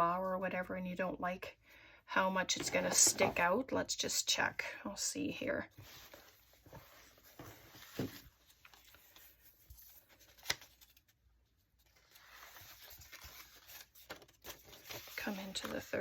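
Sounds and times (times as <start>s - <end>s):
paper rustling: 5.8s - 16.0s.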